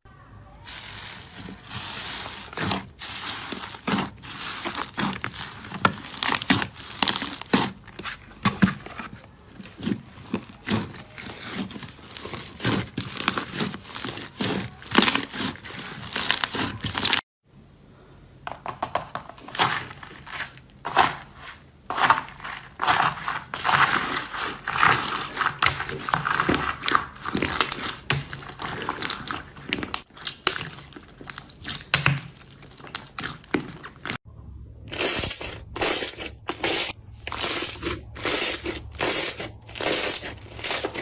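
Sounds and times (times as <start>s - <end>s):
slime crackling and popping: 1.7s - 7.9s, 10.3s - 17.2s, 23.0s - 34.2s.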